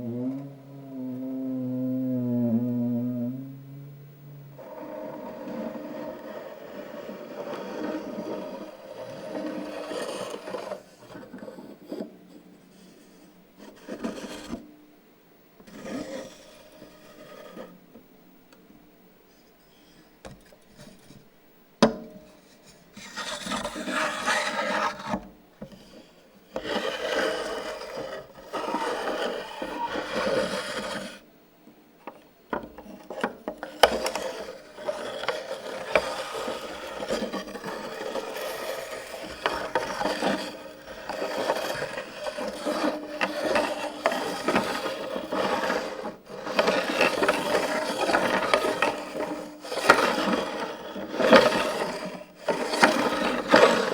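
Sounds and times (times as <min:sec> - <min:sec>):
rubbing and scraping on hard surface: 0:04.6 - 0:14.7, 0:15.6 - 0:17.8, 0:22.3 - 0:31.2, 0:32.8 - 0:53.9.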